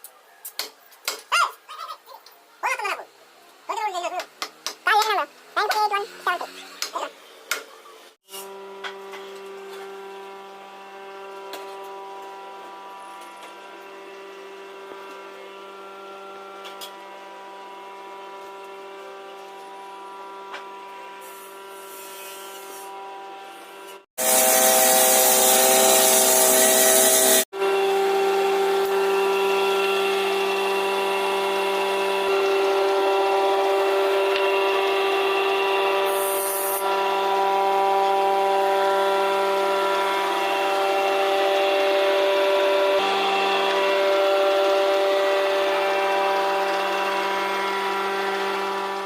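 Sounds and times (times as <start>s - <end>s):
saw cutting into wood: 24.2s - 27.5s.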